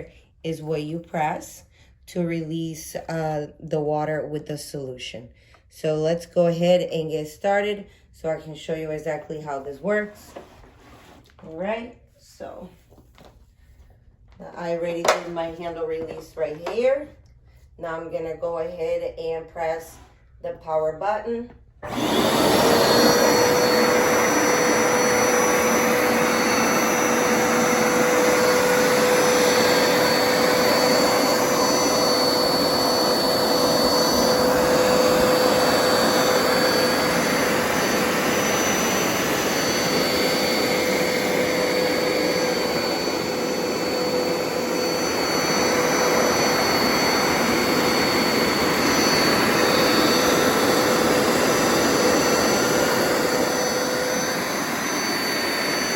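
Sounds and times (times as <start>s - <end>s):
carpet cleaner motor whining: 21.8s - 55.9s.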